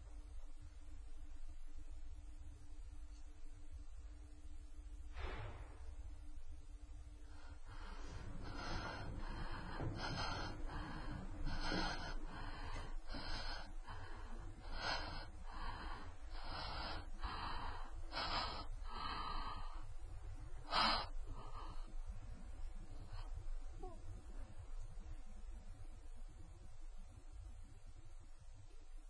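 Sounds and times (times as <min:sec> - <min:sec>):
person breathing heavily: 0:07.2 - 0:24.0.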